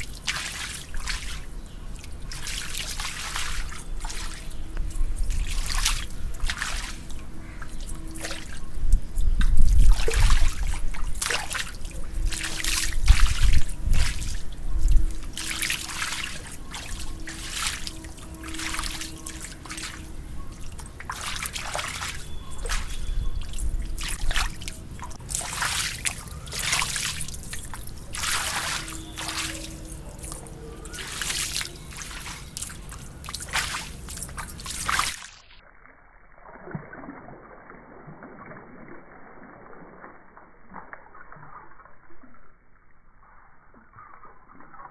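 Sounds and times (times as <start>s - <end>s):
water trickling and splashing: 0.0s - 44.9s
low rumbling noise: 3.0s - 35.1s.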